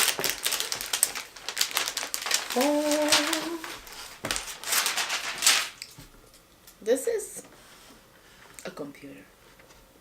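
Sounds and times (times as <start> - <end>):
packaging rustling and crinkling: 0.0 - 5.8
person humming: 2.5 - 3.8.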